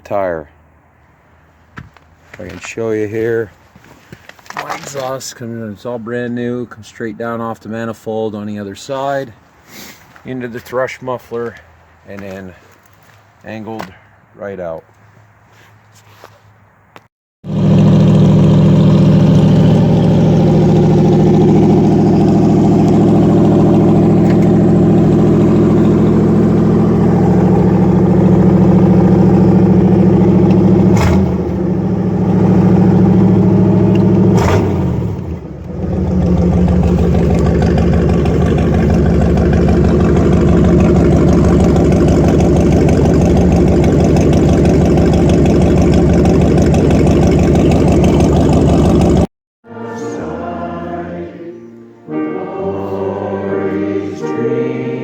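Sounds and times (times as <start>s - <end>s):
loud car exhaust note: 17.4s - 49.3s.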